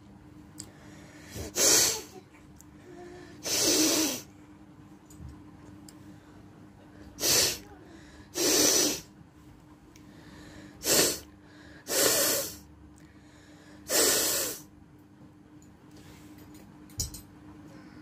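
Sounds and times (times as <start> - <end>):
faint steady hum: 0.0 - 18.0
forceful nose blowing: 1.3 - 2.1, 3.4 - 4.3, 7.2 - 7.6, 8.3 - 9.1, 10.8 - 12.6, 13.9 - 14.7.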